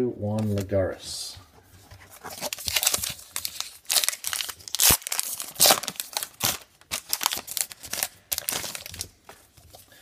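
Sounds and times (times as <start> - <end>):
wrapper crinkling and ripping: 2.3 - 9.2.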